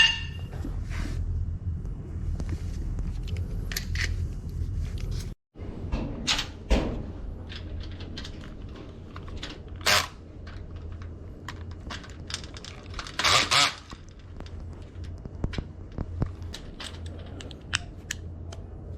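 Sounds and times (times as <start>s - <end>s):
clicks and clatter of tools: 7.5s - 18.6s.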